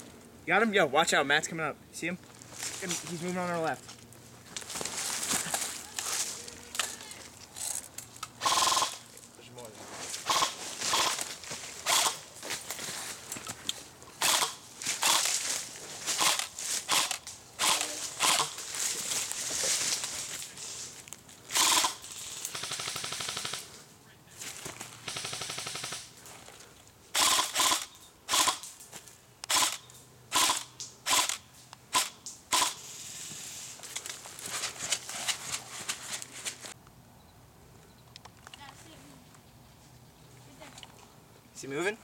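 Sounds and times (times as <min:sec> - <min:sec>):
airsoft rifles firing: 0:08.4 - 0:09.0, 0:10.2 - 0:12.3, 0:14.2 - 0:15.5, 0:16.1 - 0:18.6, 0:21.5 - 0:23.7, 0:25.0 - 0:26.2, 0:27.1 - 0:28.7, 0:29.5 - 0:32.8.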